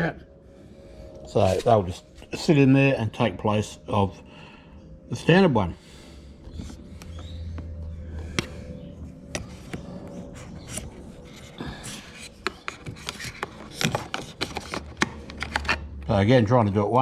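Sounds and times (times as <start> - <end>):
light rubbing and scraping: 1.3 - 2.6
plastic cover clicking and tapping: 12.5 - 15.6.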